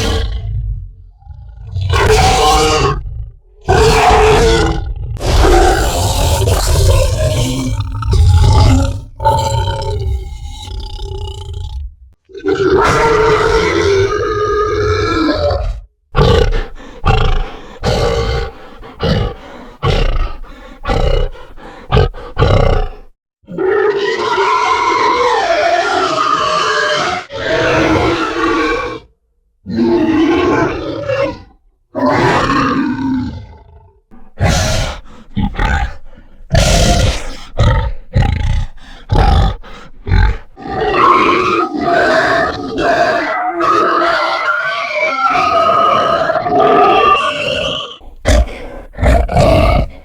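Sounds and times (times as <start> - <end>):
monster boar roaring: 0.0 - 29.1, 29.7 - 50.0
boar grunts: 12.8 - 23.1, 32.5 - 50.0.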